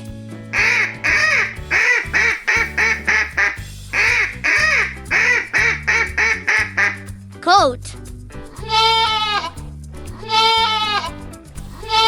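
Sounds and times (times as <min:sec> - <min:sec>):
backing music: 0:00.0 - 0:12.0
duck quacking rapidly: 0:00.6 - 0:07.1.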